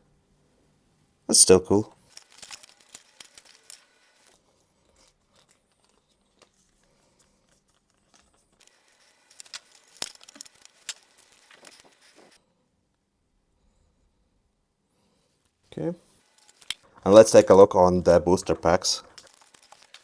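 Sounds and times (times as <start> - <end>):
packaging crinkling: 2.0 - 12.4, 16.2 - 17.4, 19.1 - 20.0.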